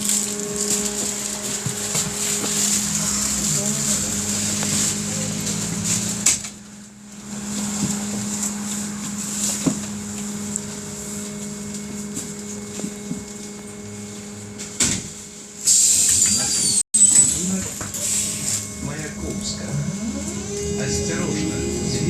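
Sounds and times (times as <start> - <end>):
electrical hum: 0.0 - 22.0
pneumatic doors hissing: 15.6 - 18.8.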